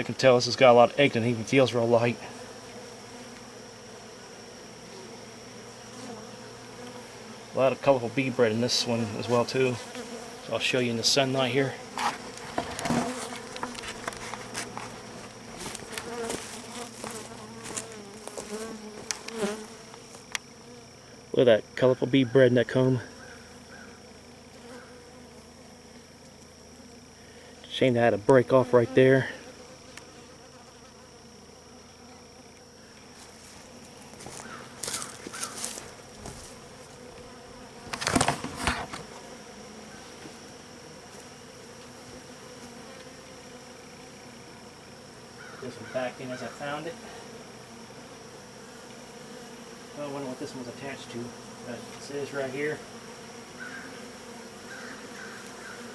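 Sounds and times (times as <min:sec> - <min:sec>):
honeybees buzzing: 0:00.0 - 0:55.9
rustles and knocks: 0:12.0 - 0:20.4, 0:33.2 - 0:39.2.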